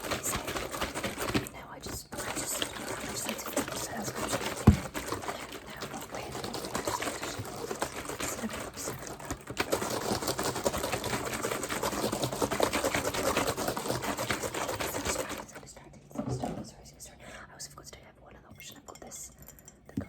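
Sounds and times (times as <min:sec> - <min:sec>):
rapid dense clicking and crackling: 0:00.0 - 0:15.6.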